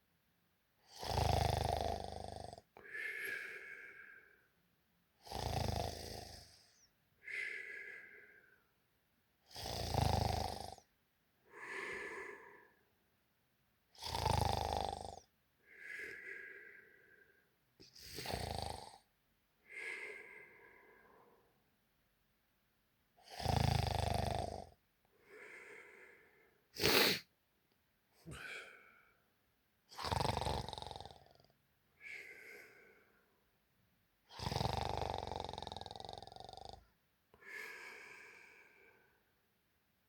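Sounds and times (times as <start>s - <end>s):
person snoring loudly: 0.9s - 4.0s, 5.2s - 6.8s, 9.5s - 10.9s, 14.0s - 15.3s, 17.9s - 19.0s, 23.2s - 24.8s, 26.8s - 27.2s, 29.9s - 31.4s, 34.3s - 36.9s
soft high-pitched breath: 2.8s - 4.5s, 6.8s - 8.7s, 15.7s - 17.5s.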